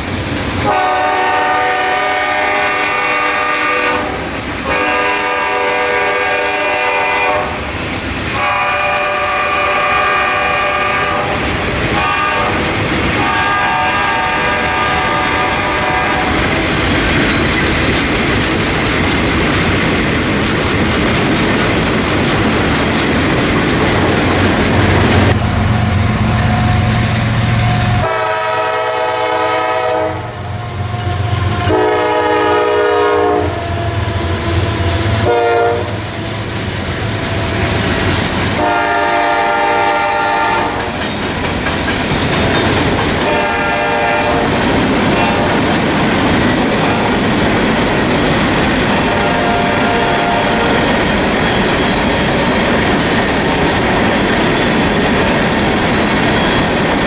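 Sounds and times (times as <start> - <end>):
train passing with rumble: 0.0 - 57.0
locomotive air horn blasts: 0.6 - 7.6, 8.3 - 11.4, 12.0 - 16.8, 27.6 - 36.2, 38.6 - 40.9, 43.2 - 44.6, 49.0 - 50.9.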